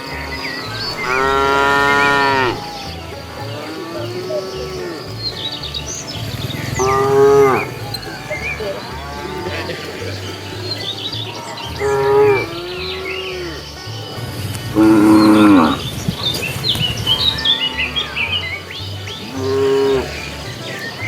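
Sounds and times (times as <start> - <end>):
cows mooing: 0.0 - 2.8, 4.3 - 13.6, 14.7 - 20.5.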